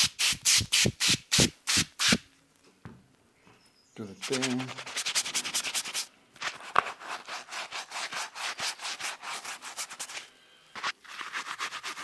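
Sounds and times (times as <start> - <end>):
toothbrush scrubbing fabric: 4.3 - 10.2, 10.8 - 12.0.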